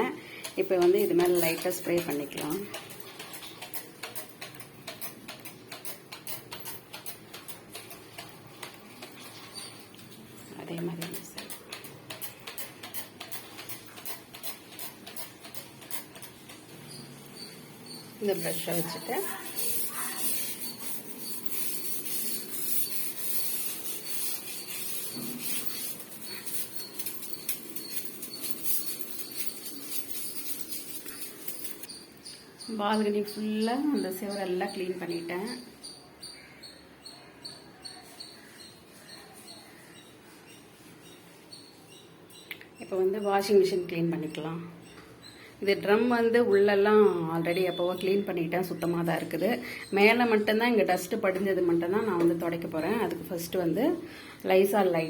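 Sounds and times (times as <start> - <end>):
scrub brush scrubbing wall: 18.2 - 31.9
trigger spray bottle spraying: 18.3 - 31.9.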